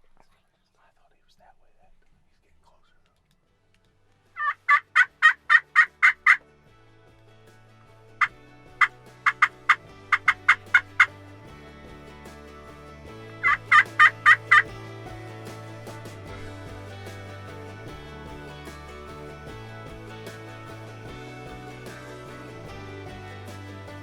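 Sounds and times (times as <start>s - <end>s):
background music: 2.7s - 24.0s
turkey gobbling: 4.4s - 6.4s, 8.8s - 11.1s, 13.4s - 14.7s.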